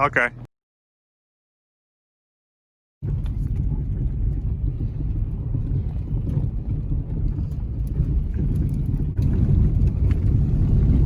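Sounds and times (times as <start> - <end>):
engine and drivetrain rumble: 3.0 - 11.0.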